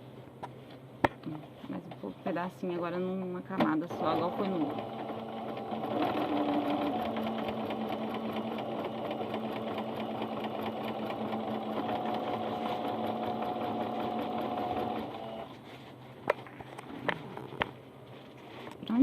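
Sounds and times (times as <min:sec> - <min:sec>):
sewing machine stitching: 0:03.8 - 0:15.5.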